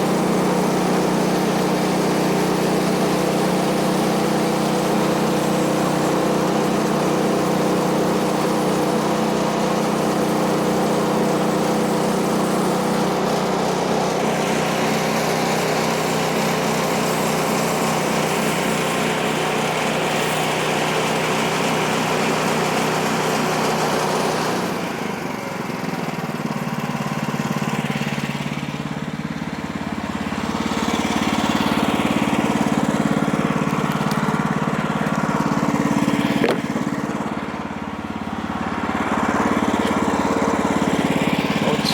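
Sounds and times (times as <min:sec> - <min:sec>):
gas engine running: 0:00.0 - 0:41.9
band blade sawing through log: 0:35.2 - 0:37.1.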